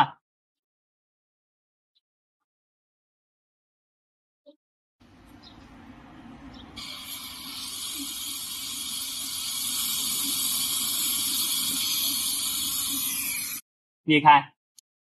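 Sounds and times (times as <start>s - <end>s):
gas torch flame hissing: 5.1s - 13.6s.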